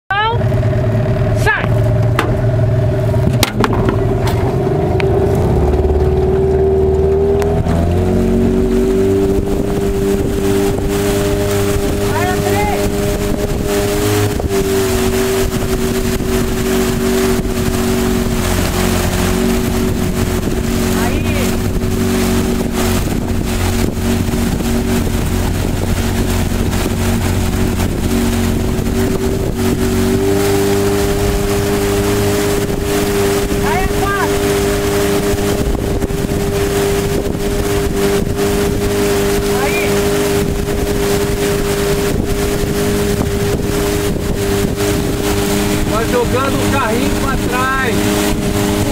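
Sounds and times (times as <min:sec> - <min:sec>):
wind: 0:00.0 - 0:48.9
motorboat engine running: 0:00.1 - 0:48.9
water noise: 0:00.1 - 0:48.9
sharp knocks: 0:02.0 - 0:02.5, 0:03.2 - 0:04.5.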